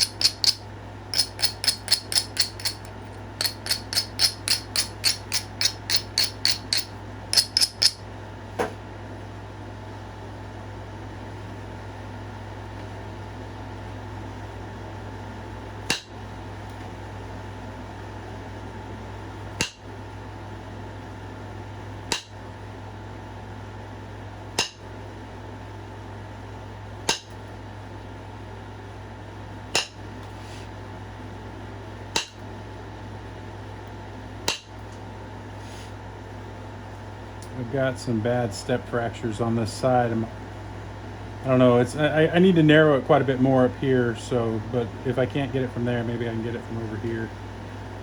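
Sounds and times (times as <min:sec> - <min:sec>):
knapping tool clicking on stone: 0:00.0 - 0:08.0.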